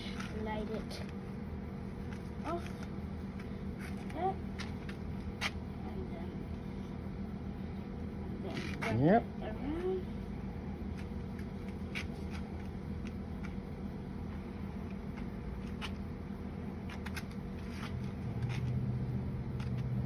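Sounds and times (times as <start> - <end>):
rope rustling and scraping: 0.0 - 1.3, 1.9 - 5.7, 8.4 - 9.0, 10.8 - 13.7, 14.7 - 20.0
steady low hum: 0.0 - 20.0.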